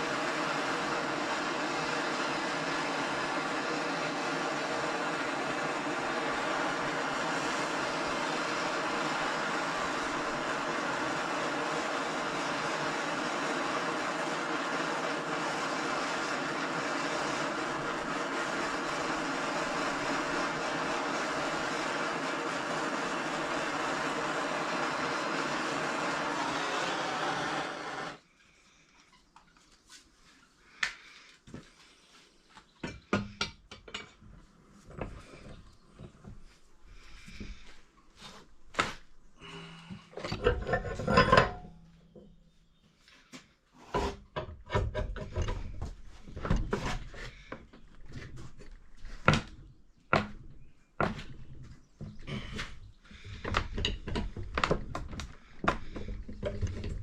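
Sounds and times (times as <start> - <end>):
metal scraping: 40.0 - 42.2
metal clanks and knocks: 40.2 - 42.1, 44.0 - 47.1, 53.3 - 57.0.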